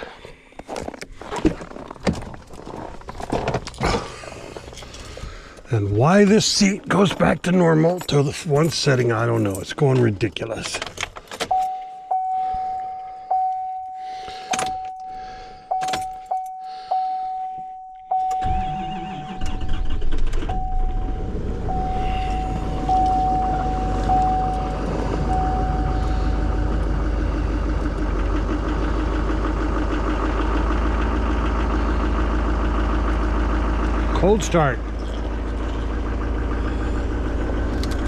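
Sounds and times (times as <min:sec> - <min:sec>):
engine cranking and idling: 0:00.0 - 0:38.0
dashboard warning chime: 0:11.4 - 0:27.1.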